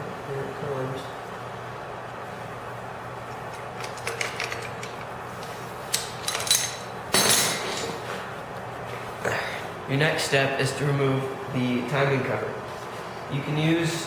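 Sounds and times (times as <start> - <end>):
metal clicks and clanks: 3.4 - 5.1.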